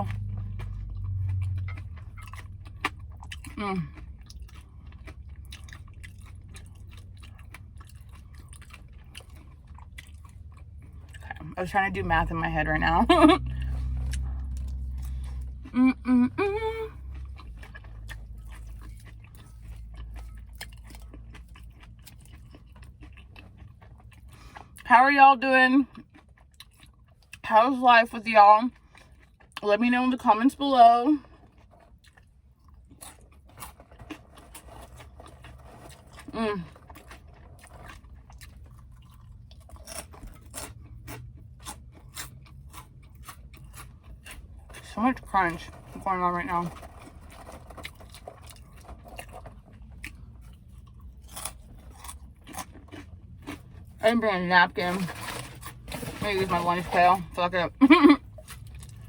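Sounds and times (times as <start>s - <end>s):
person chewing crunchy food: 0.0s - 12.4s, 13.4s - 24.9s, 25.8s - 27.5s, 28.7s - 29.7s, 31.0s - 59.0s
low steady hum: 0.0s - 59.0s.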